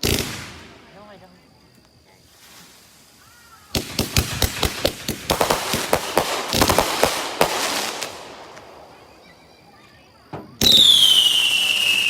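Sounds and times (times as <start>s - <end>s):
firework crackling pops: 0.0s - 0.9s, 2.4s - 9.3s, 10.4s - 12.0s.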